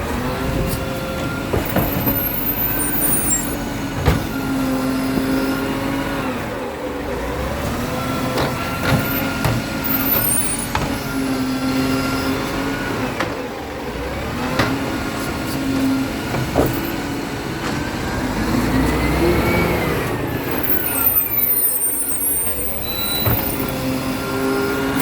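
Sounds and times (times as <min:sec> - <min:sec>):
garbage truck engine running: 0:00.0 - 0:25.0
faint high squeaks: 0:01.6 - 0:03.6, 0:09.0 - 0:10.8, 0:16.6 - 0:17.0, 0:20.3 - 0:24.0.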